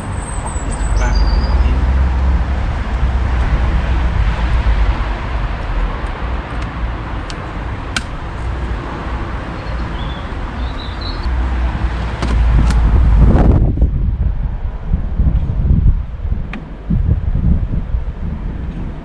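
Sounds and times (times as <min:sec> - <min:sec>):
wind on microphone: 0:00.0 - 0:08.4, 0:11.3 - 0:19.0
low rumble of traffic: 0:00.0 - 0:19.0
sharp clicks: 0:06.0 - 0:08.5.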